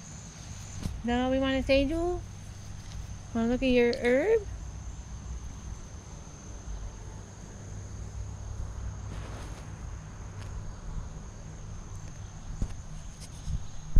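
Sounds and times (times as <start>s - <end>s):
crickets trilling: 0.0s - 13.9s
brief rustle: 9.1s - 9.7s, 12.6s - 13.7s.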